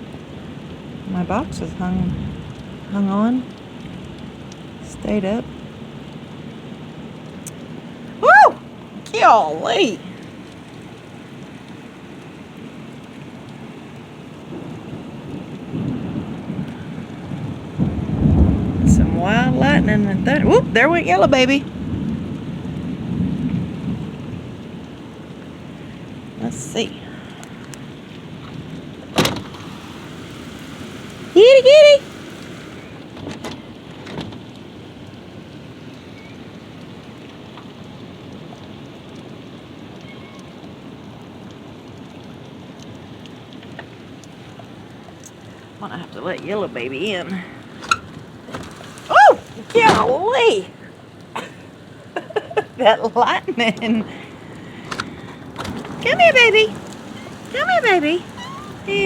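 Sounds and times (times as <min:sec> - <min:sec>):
heavy rain falling: 0:00.0 - 0:59.0
low rumble of thunder: 0:00.8 - 0:06.1, 0:14.3 - 0:34.5, 0:54.1 - 0:59.0.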